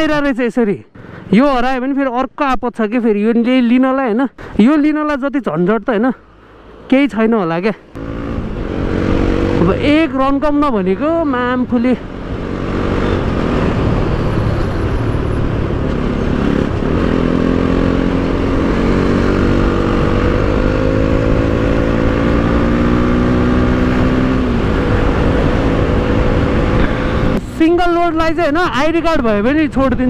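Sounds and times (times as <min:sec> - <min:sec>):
motorcycle engine running: 0:08.0 - 0:27.6
rushing noise: 0:12.0 - 0:22.0.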